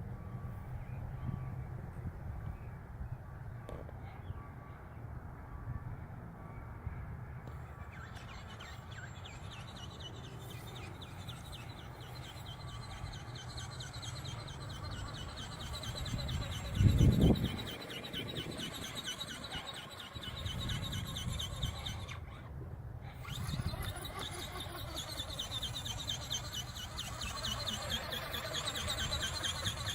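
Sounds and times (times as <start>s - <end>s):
wind buffeting microphone: 5.1s - 29.9s
fast high chirps: 8.0s - 22.3s, 23.2s - 29.9s.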